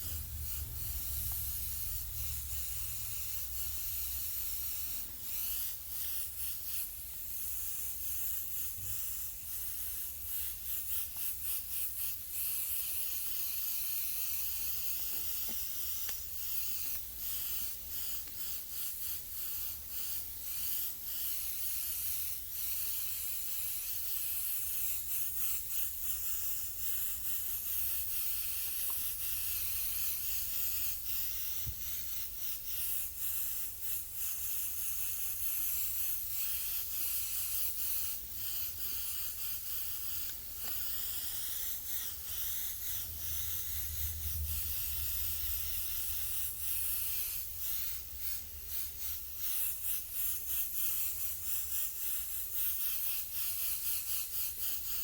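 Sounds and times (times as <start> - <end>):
paint sprayer hissing: 0.0 - 55.0.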